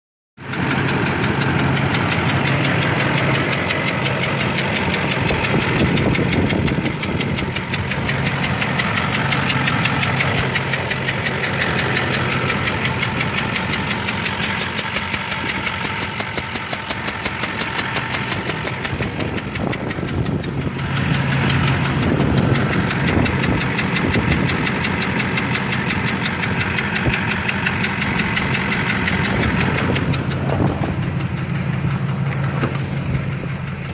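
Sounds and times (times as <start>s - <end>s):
diesel engine idling: 0.4s - 33.9s
fast ticking knock: 0.4s - 33.9s.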